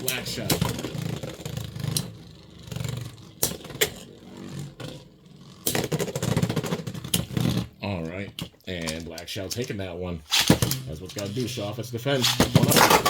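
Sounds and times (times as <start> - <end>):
spinning tops whirring: 0.0 - 7.7.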